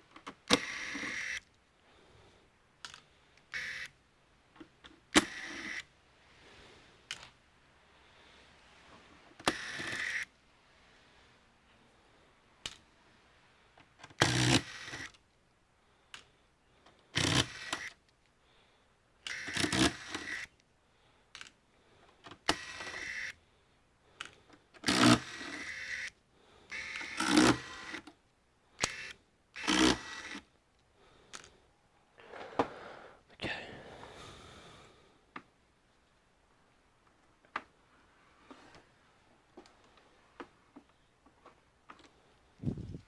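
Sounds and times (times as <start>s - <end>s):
electric screwdriver running: 9.5s - 10.3s, 14.2s - 15.2s, 17.2s - 17.9s, 19.3s - 20.5s, 24.8s - 26.1s, 26.7s - 28.1s, 28.8s - 30.4s.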